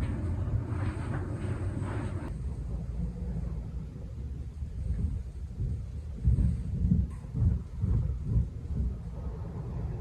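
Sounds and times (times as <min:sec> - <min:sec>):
low uneven rumble: 0:00.0 - 0:10.0.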